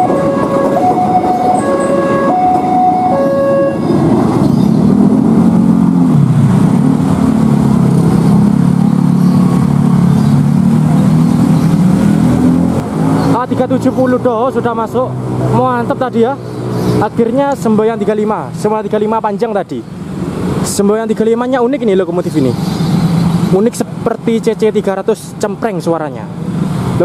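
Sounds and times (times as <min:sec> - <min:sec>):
two-note warning tone: 0:00.0 - 0:04.0
locomotive engine hum: 0:00.0 - 0:13.2.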